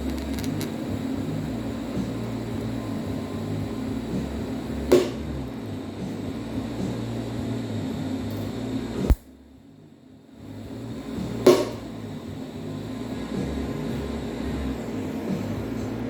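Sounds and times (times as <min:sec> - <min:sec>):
welder buzzing hum and hiss: 0:00.0 - 0:16.0
sharp click: 0:09.1 - 0:09.3.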